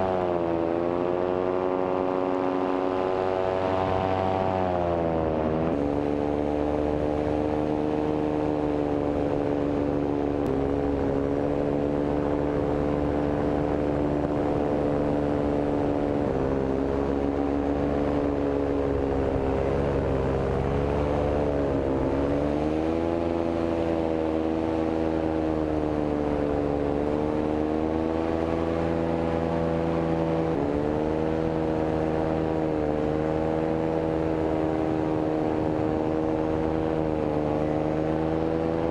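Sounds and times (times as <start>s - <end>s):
paramotor engine and propeller: 0.0s - 38.9s.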